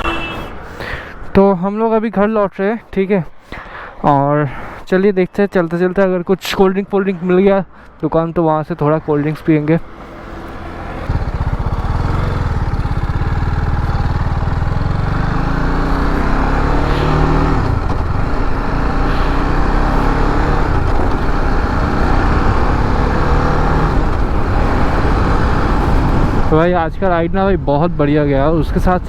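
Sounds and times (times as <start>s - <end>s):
road noise: 0.0s - 1.6s, 3.1s - 29.0s
motorcycle engine running: 10.2s - 26.5s.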